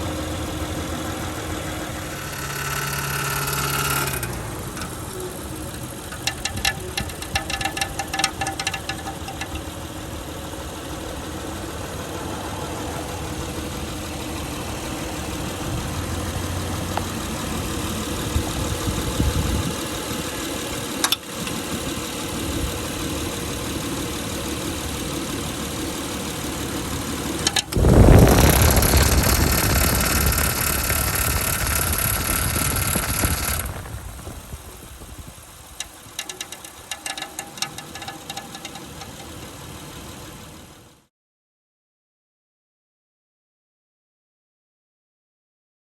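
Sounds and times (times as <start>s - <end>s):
damaged cooling fan noise: 0.0s - 10.7s, 26.4s - 40.8s
car engine running: 0.0s - 41.1s.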